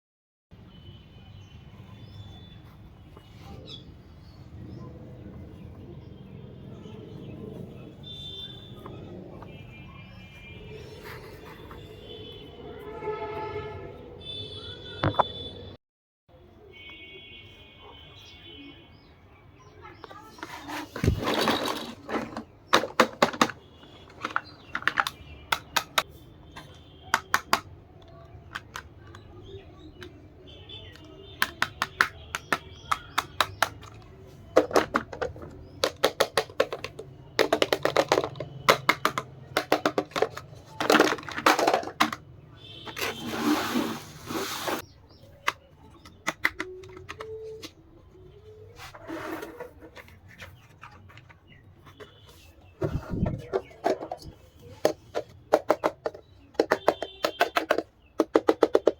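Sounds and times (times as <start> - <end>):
plastic toy pieces clicking: 27.1 - 29.1, 31.0 - 42.2, 45.4 - 47.3.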